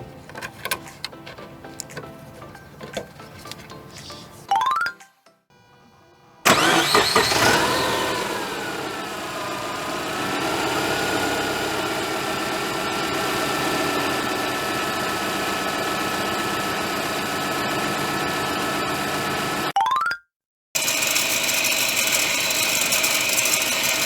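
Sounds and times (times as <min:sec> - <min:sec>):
car engine idling: 0:06.4 - 0:19.6.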